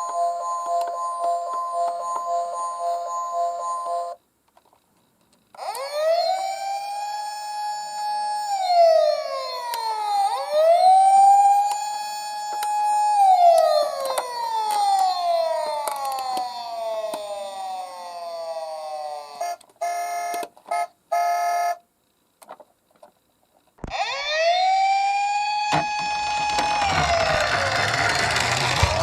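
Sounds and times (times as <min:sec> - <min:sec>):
emergency vehicle siren wailing: 0:05.6 - 0:19.5, 0:23.9 - 0:29.0.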